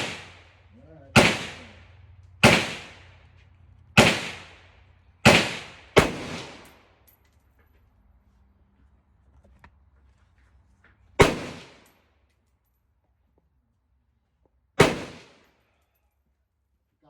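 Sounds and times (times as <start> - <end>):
rifle shots: 0.0 - 3.2, 4.0 - 6.8, 11.2 - 11.9, 14.8 - 15.5.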